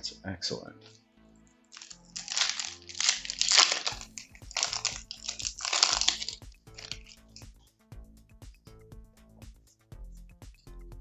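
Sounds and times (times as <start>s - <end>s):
background music with steady beat: 0.0s - 11.0s
foil wrapper crinkling: 1.8s - 7.4s.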